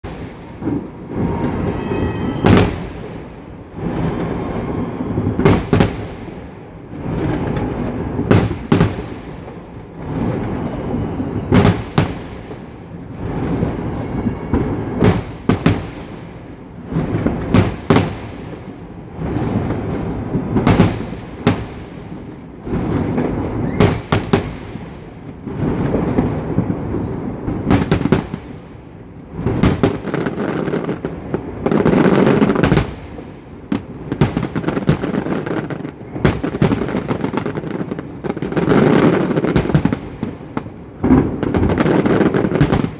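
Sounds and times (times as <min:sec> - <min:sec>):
fireworks crackling: 0:00.0 - 0:42.9.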